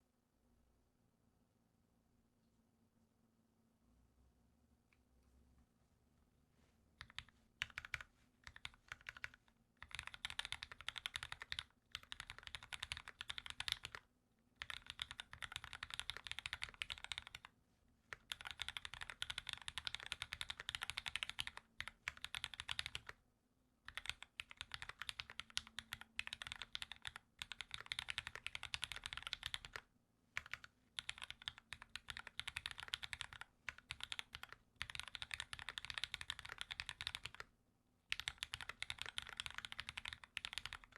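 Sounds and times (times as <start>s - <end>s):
mechanical keyboard typing: 7.0s - 17.5s, 18.1s - 23.2s, 23.9s - 29.8s, 30.4s - 37.5s, 38.1s - 40.9s.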